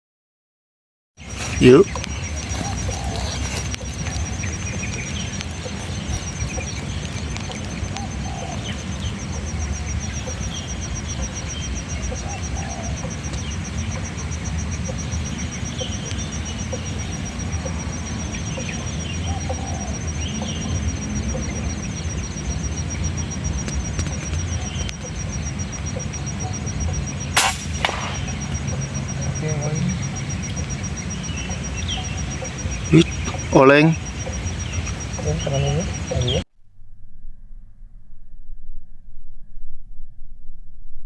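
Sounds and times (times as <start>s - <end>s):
low cooing: 1.2s - 22.2s, 27.9s - 36.4s
bird calls: 1.2s - 36.5s
wind rumble on microphone: 1.2s - 41.0s
fast high pulsing buzz: 7.7s - 36.4s.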